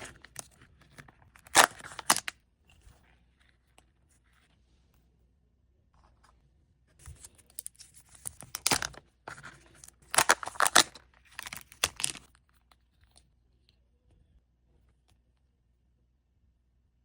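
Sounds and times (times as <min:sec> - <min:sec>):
plastic wrapper tearing and crumpling: 0:01.4 - 0:02.3, 0:07.7 - 0:12.3.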